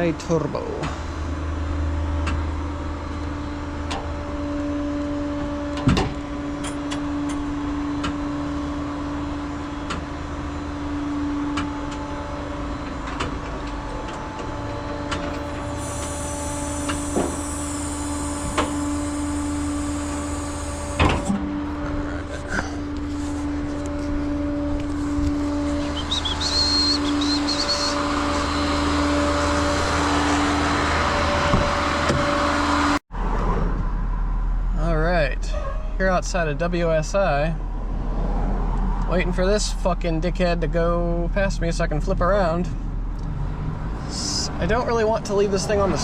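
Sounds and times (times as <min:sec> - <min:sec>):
constant whine: 0:00.0 - 0:46.0
engine and road rumble: 0:00.0 - 0:46.0.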